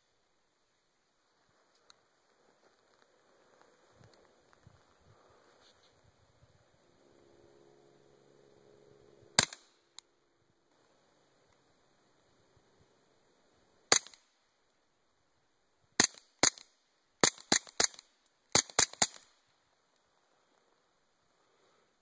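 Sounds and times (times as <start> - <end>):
suppressed pistol shots: 9.4 - 9.7, 13.9 - 14.2, 16.0 - 19.2.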